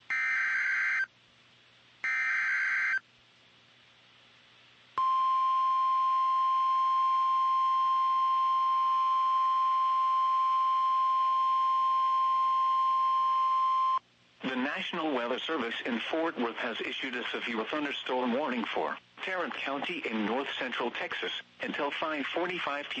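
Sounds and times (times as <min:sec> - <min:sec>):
steady warning alarm tone: 0:00.1 - 0:01.1, 0:02.0 - 0:03.0.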